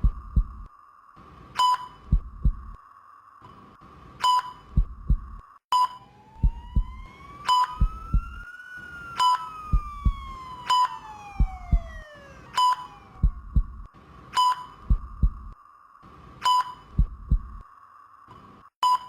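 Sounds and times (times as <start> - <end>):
low heartbeat thump: 0.0 - 0.7, 2.0 - 2.8, 4.7 - 5.4, 6.4 - 7.1, 7.7 - 8.4, 9.7 - 10.5, 11.3 - 12.1, 13.2 - 13.9, 14.8 - 15.6, 16.9 - 17.6
siren-like tone: 5.8 - 13.9.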